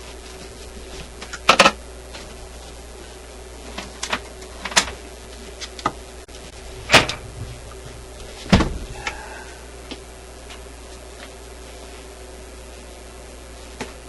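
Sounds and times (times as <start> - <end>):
dull thud: 6.8 - 8.9.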